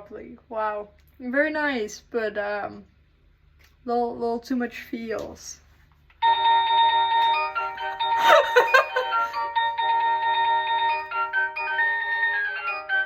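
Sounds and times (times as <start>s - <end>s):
electronic doorbell chime melody: 6.2s - 13.0s.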